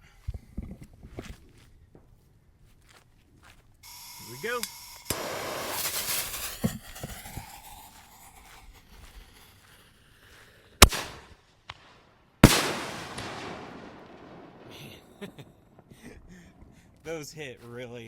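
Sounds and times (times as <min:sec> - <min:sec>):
firework launch bang: 0:03.8 - 0:09.8, 0:10.8 - 0:16.0
firework shell bursting: 0:03.8 - 0:16.1.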